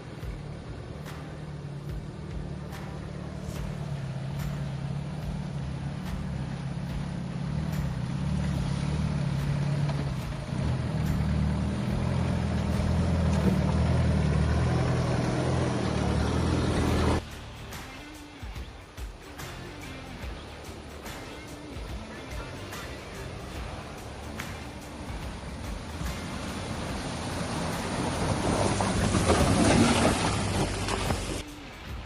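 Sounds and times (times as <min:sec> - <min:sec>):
vehicle engine running: 0:00.0 - 0:17.8, 0:19.2 - 0:32.0
water rushing: 0:23.3 - 0:32.0.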